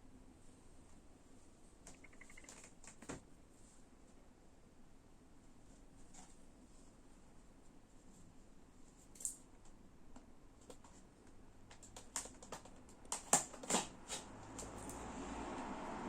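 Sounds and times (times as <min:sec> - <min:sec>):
packaging clicks and crackles: 0:11.7 - 0:14.9.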